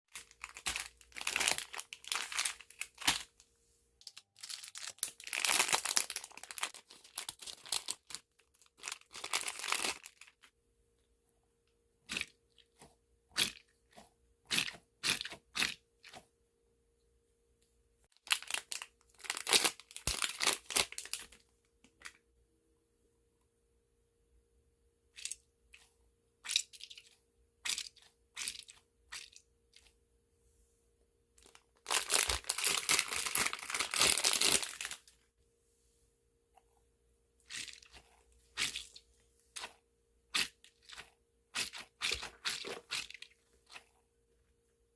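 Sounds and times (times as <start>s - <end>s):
squishy toy crinkling: 0.1s - 3.3s, 4.0s - 10.5s, 18.2s - 21.4s, 31.4s - 35.2s.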